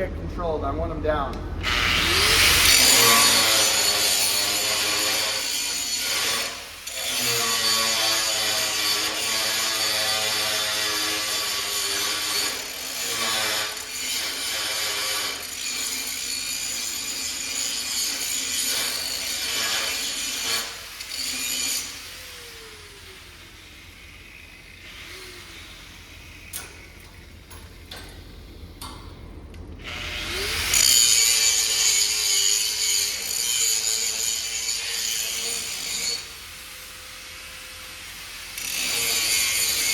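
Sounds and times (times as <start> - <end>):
angle grinder motor whine: 1.6 - 4.4.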